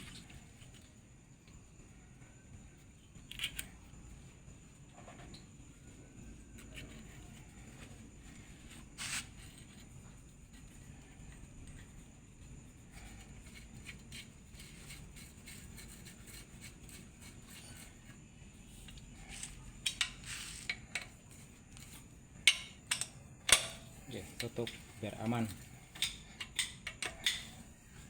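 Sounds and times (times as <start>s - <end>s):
metal clicks: 22.5s - 24.8s.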